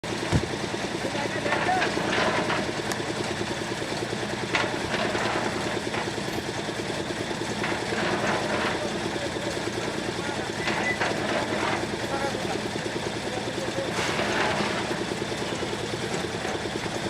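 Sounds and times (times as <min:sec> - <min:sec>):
heavy machinery engine running: 0:00.0 - 0:17.0
sharp knocks: 0:00.3 - 0:00.6.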